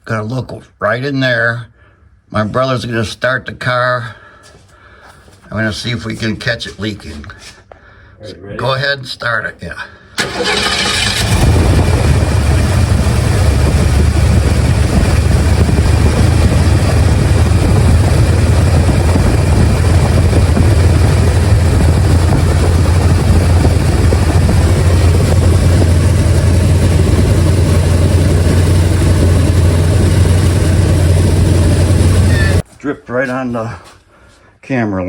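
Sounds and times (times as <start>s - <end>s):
car engine idling: 10.2s - 32.6s.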